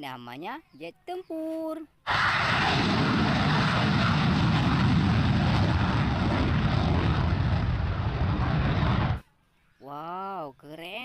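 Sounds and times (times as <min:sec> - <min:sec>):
aircraft engine rushing: 0:02.1 - 0:09.2
deep rumble: 0:02.1 - 0:09.2.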